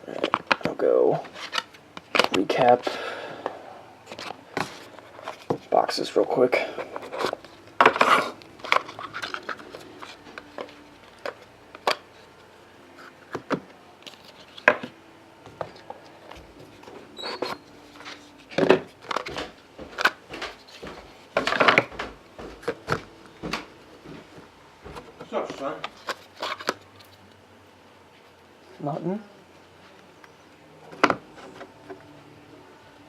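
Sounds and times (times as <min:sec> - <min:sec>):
cards handled on a table: 0:15.5 - 0:27.1.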